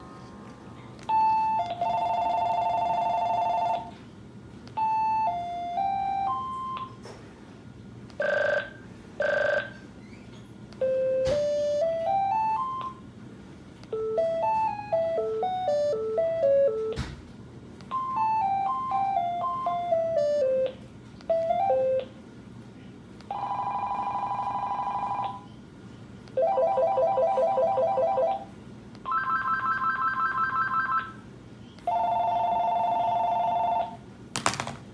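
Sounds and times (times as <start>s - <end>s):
beeping phone ringtones: 1.1s - 4.0s, 4.8s - 7.0s, 10.8s - 13.0s, 13.9s - 17.0s, 17.9s - 22.1s, 23.3s - 25.5s, 29.1s - 31.1s, 31.9s - 34.0s.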